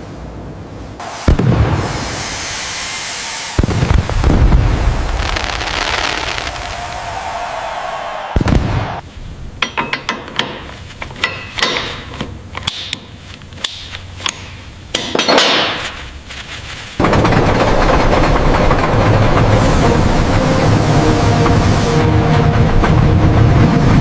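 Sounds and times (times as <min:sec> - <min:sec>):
loud rushing noise: 0:00.8 - 0:09.1, 0:17.0 - 0:24.0
hammer striking metal: 0:09.6 - 0:15.9.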